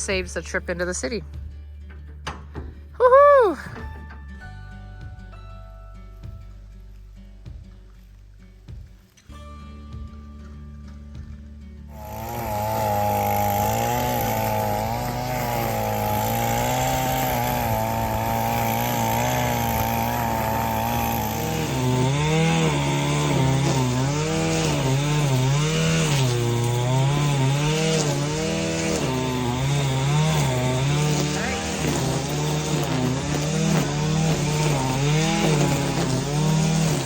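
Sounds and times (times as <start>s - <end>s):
string trimmer engine running: 11.2s - 37.0s.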